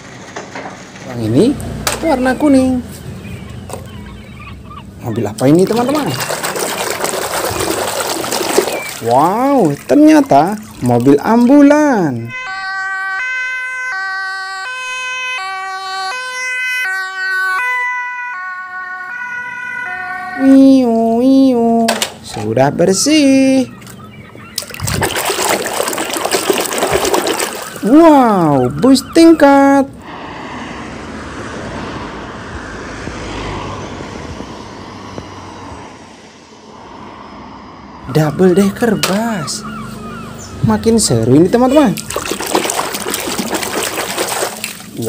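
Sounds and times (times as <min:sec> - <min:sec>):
running water rushing: 0:05.3 - 0:12.2, 0:23.8 - 0:28.6, 0:41.0 - 0:45.0
two-tone ambulance siren: 0:09.3 - 0:21.6, 0:27.1 - 0:30.0, 0:37.0 - 0:42.0
loud wavering sound: 0:30.0 - 0:38.8.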